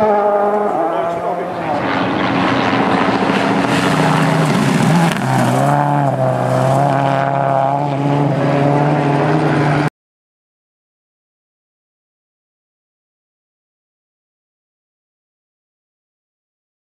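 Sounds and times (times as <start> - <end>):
car engine at high revs: 0.0 - 9.9.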